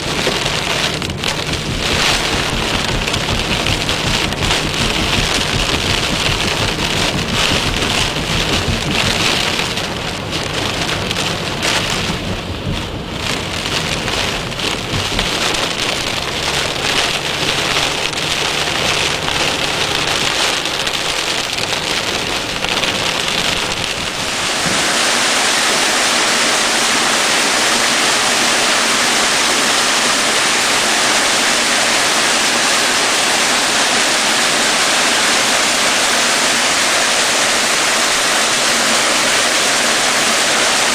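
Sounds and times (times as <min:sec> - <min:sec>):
wind noise on microphone: 0:00.0 - 0:26.4
heavy rain: 0:00.0 - 0:40.9
steady rushing water: 0:00.0 - 0:40.9.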